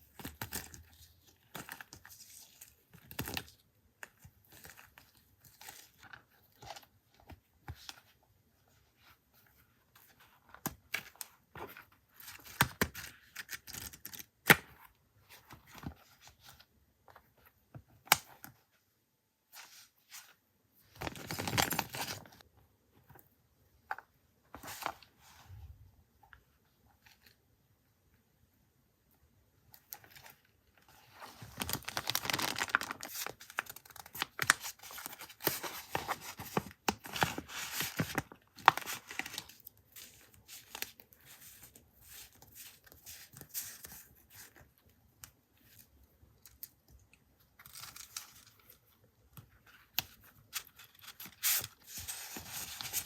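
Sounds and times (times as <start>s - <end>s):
paper rustling and crinkling: 19.5s - 22.4s, 29.9s - 44.7s, 49.6s - 53.0s.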